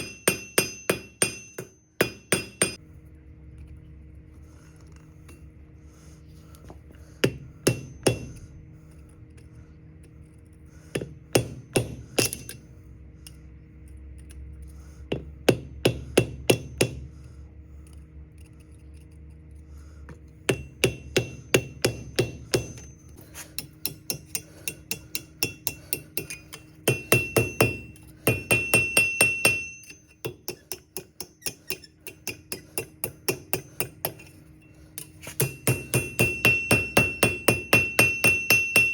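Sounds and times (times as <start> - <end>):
hammer ringing on anvil: 0.0 - 2.8, 7.2 - 8.4, 11.0 - 12.6, 20.5 - 38.9.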